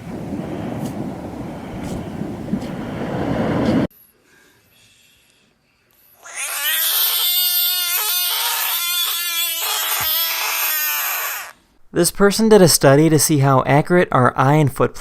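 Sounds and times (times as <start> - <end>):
animal long drawn-out call: 6.2 - 11.6.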